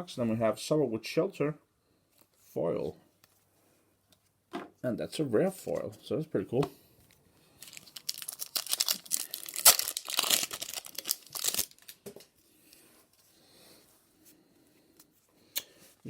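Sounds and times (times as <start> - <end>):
wrapper tearing and crinkling: 7.6 - 12.0.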